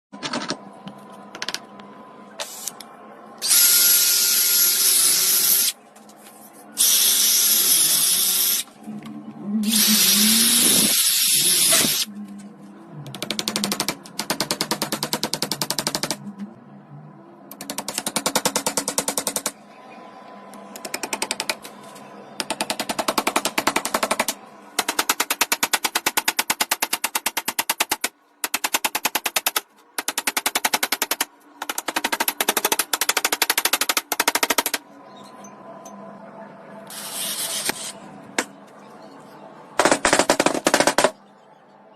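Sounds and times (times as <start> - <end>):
power drill running: 3.4 - 5.7, 9.7 - 12.0.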